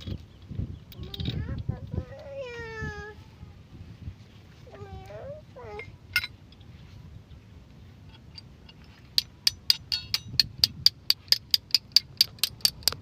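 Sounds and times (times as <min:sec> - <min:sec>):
ratchet wrench clicking: 0:09.2 - 0:13.0.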